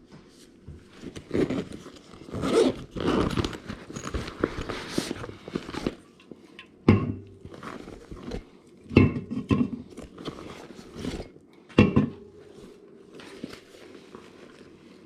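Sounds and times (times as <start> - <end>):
fabric rustling: 0.4 - 6.1, 7.4 - 8.6, 9.9 - 11.4, 12.3 - 15.0.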